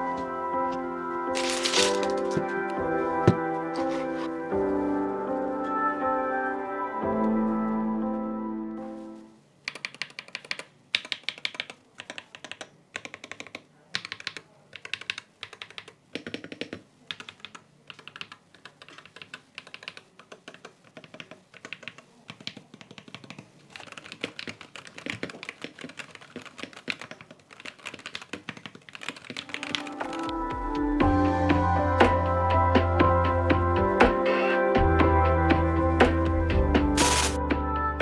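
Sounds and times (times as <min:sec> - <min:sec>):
music: 0:00.0 - 0:09.4, 0:29.5 - 0:38.0
typing on mechanical keyboard: 0:09.6 - 0:31.1.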